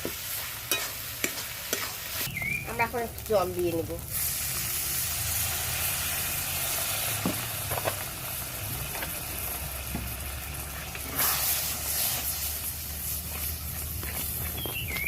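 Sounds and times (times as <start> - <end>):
paste sizzling in hot oil: 0.0 - 15.0.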